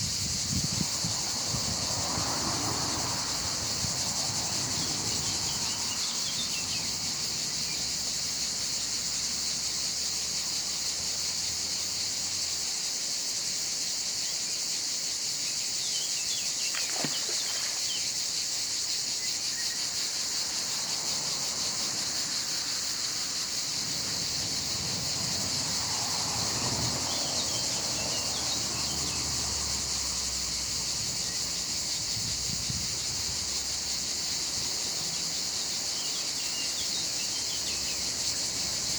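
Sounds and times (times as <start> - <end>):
shrill insect chorus: 0.0 - 38.9.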